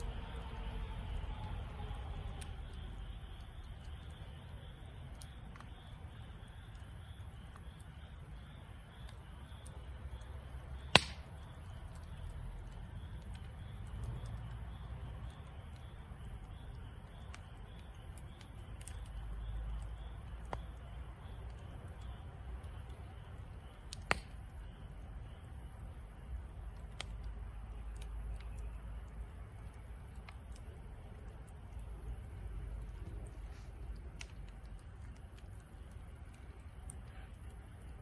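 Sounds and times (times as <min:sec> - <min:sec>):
fire popping: 0:00.0 - 0:38.0
wood fire crackling: 0:00.0 - 0:38.0.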